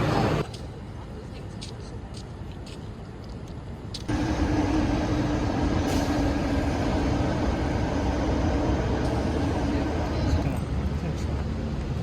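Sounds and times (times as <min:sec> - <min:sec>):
vehicle engine rumbling: 0:03.7 - 0:12.0.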